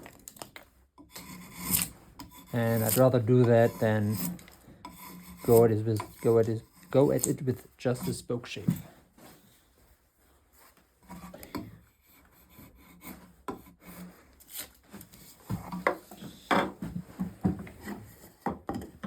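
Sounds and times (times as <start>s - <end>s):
drawknife scraping wood: 0.3s - 8.3s, 11.0s - 16.3s, 17.6s - 18.8s.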